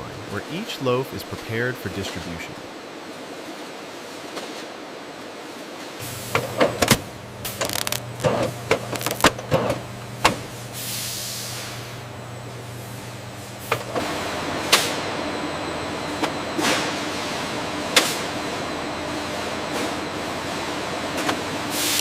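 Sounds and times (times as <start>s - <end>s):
machinery humming: 6.0s - 22.0s
mechanical clicks and clatters: 6.3s - 10.4s
burst of air hissing: 10.5s - 11.8s.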